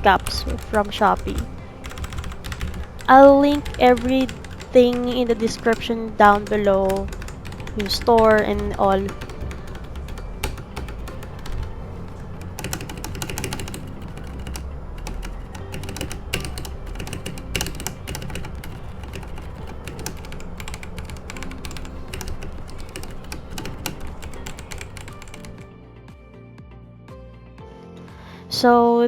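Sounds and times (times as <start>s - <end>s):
mechanical keyboard typing: 0.0s - 25.7s
background music: 0.0s - 29.0s.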